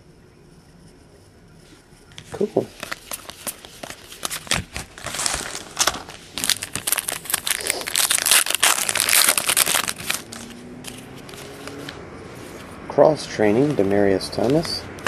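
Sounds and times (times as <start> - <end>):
wrapper tearing and crinkling: 2.7 - 12.0.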